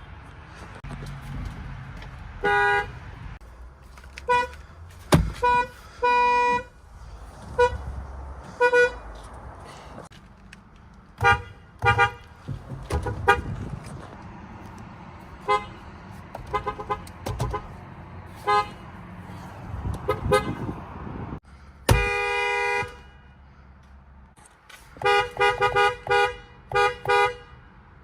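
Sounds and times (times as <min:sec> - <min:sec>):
car horn toots: 0:02.4 - 0:03.0, 0:04.3 - 0:04.6, 0:05.3 - 0:06.7, 0:07.6 - 0:07.9, 0:08.6 - 0:09.0, 0:11.2 - 0:12.3, 0:12.9 - 0:13.6, 0:15.4 - 0:15.8, 0:16.4 - 0:17.7, 0:18.4 - 0:18.8, 0:20.0 - 0:20.8, 0:21.9 - 0:23.3, 0:25.0 - 0:27.6.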